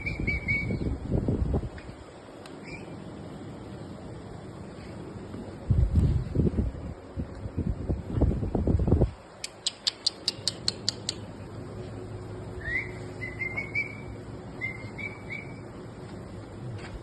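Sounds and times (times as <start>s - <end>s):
rising whistled bird notes: 0.0s - 0.9s, 2.6s - 3.0s, 12.6s - 15.6s
small birds chirping: 2.5s - 3.0s.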